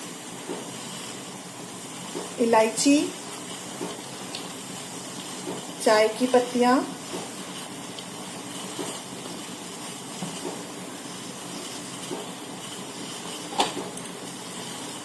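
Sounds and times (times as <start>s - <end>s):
water boiling with steady hiss: 0.0s - 15.0s.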